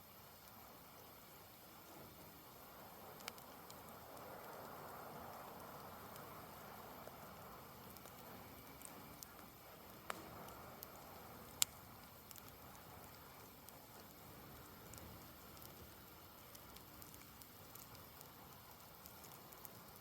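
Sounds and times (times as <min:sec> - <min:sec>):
campfire crackling: 0:00.0 - 0:20.0
sharp fire pops: 0:07.8 - 0:20.0.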